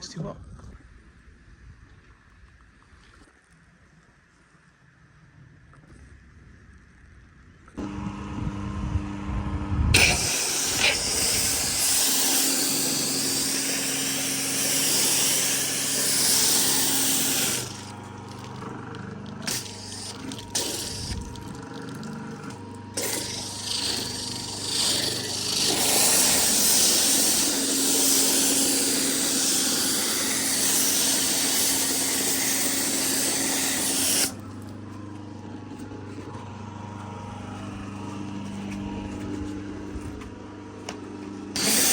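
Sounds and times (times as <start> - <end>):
pressure washer pump hum: 7.8 - 41.9
water spray hissing: 10.0 - 18.6, 19.4 - 34.4, 41.6 - 41.9.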